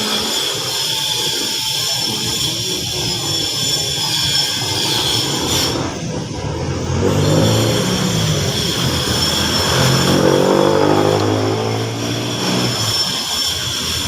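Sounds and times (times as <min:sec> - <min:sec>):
thin high whine: 0:00.0 - 0:14.0.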